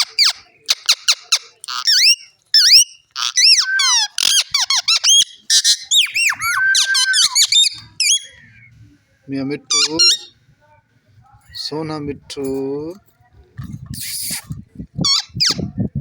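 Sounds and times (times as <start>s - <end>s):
parrot whistling and chirping: 1.8s - 8.7s.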